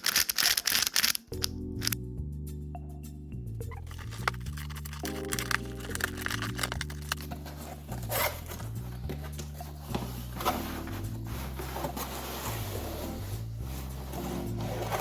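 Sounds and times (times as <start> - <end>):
background music with bass line: 1.4 - 15.0
package rustling and scraping: 3.8 - 15.0.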